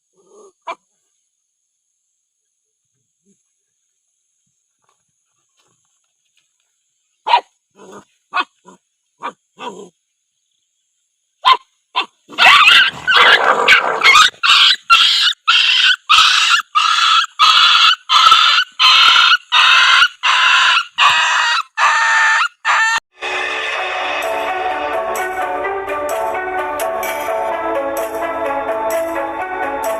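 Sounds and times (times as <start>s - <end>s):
dog yelping: 7.3s - 9.9s, 11.4s - 23.0s.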